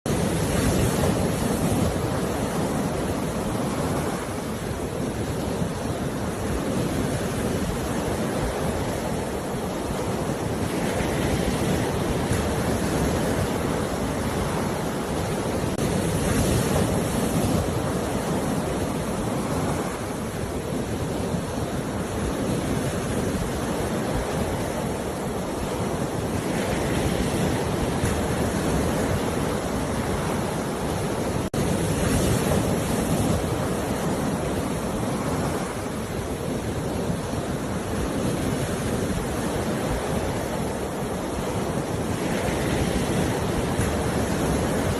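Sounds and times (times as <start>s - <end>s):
sea waves breaking on shore: 0.1s - 44.9s.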